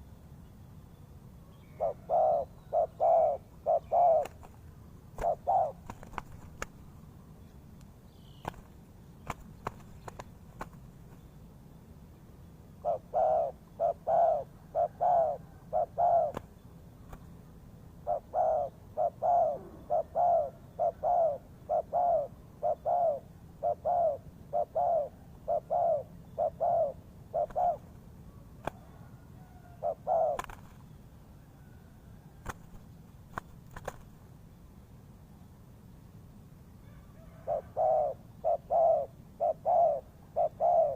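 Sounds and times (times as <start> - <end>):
dove cooing: 1.7 - 6.9, 12.8 - 16.5, 18.0 - 30.8, 36.8 - 40.9.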